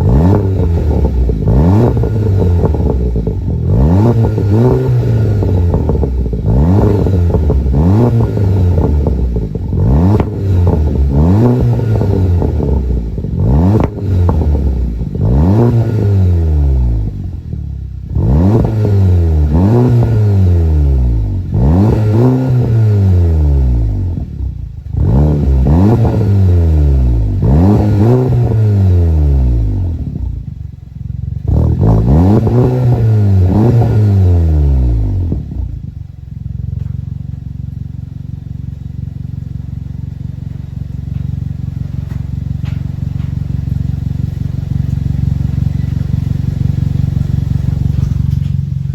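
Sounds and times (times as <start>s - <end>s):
exhaust pops and crackles: 0.0s - 20.4s, 34.7s - 48.9s
car engine revving: 0.0s - 48.9s.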